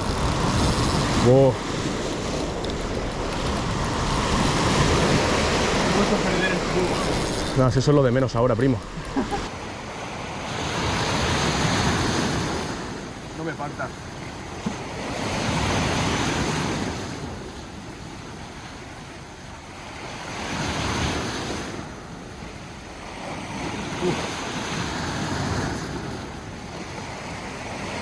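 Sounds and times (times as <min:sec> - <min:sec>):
wind buffeting microphone: 0:00.0 - 0:13.3
sea waves breaking on shore: 0:00.0 - 0:28.0.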